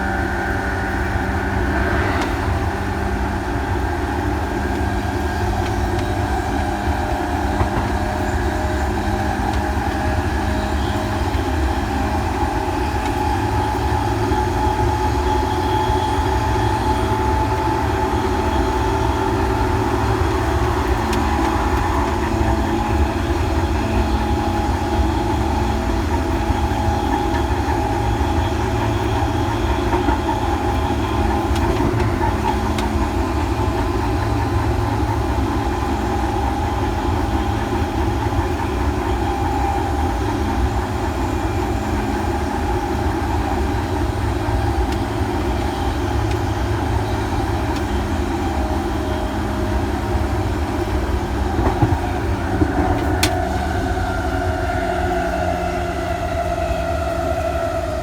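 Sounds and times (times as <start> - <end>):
electric train rumbling: 0.0 - 58.0.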